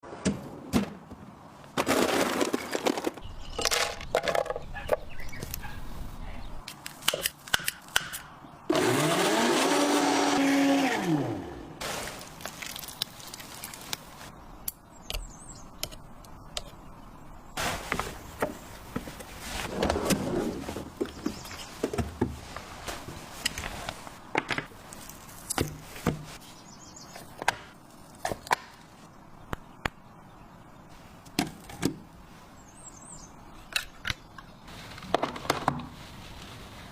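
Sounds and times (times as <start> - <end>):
electric blender running: 8.7 - 11.4.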